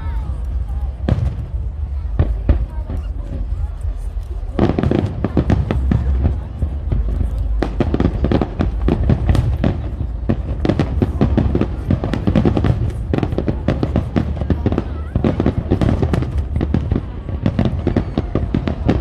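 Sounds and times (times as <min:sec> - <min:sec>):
fireworks bangs and crackles: 0:00.0 - 0:19.0.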